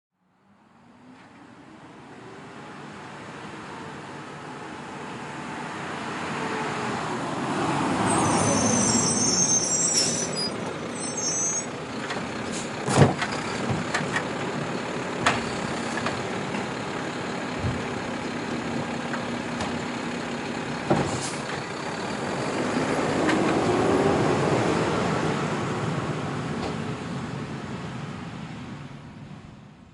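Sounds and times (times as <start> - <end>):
high squeal: 8.0 - 11.7.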